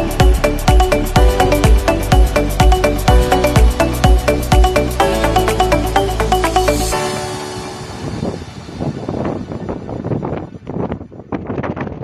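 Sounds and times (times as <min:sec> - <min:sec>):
kick-drum beat: 0:00.0 - 0:06.9
electronic music: 0:00.0 - 0:10.4.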